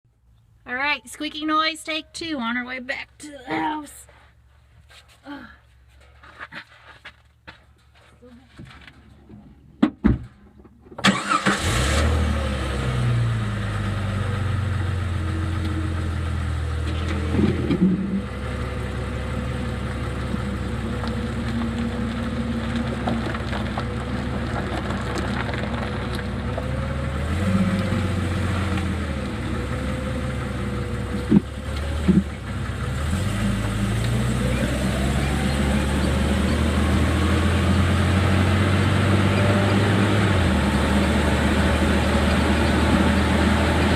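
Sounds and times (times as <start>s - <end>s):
car engine driving through gears: 10.9s - 43.9s.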